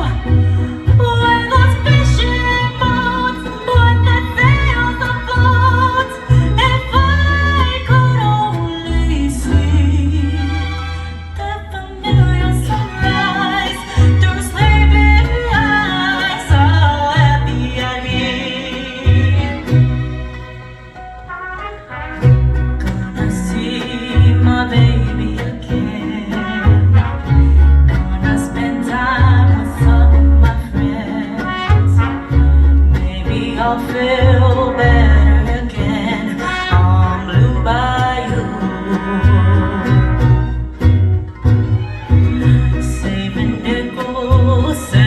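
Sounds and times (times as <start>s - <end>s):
mariachi band playing: 0.0s - 45.0s
violins: 0.0s - 45.0s
trumpets: 19.5s - 23.1s, 26.4s - 28.3s, 31.4s - 33.0s.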